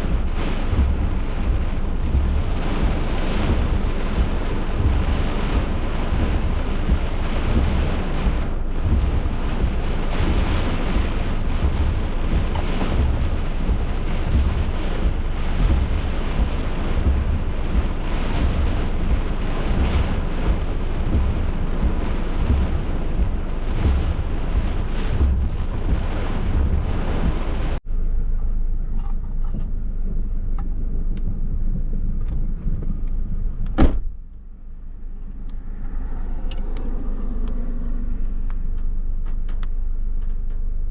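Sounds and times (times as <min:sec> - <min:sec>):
heavy rain: 0:00.0 - 0:27.8
wind buffeting microphone: 0:00.0 - 0:27.8, 0:29.3 - 0:34.3
deep thunder rumble: 0:00.0 - 0:29.0, 0:29.6 - 0:40.2.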